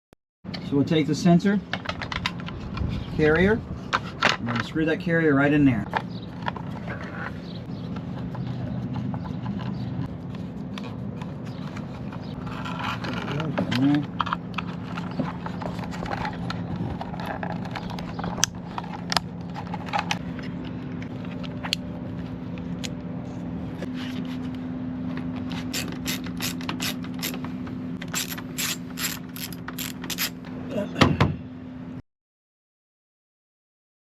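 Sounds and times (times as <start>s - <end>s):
steady low hum: 0.5s - 32.0s
ratcheting screwdriver clicks: 25.8s - 27.4s, 28.0s - 30.3s.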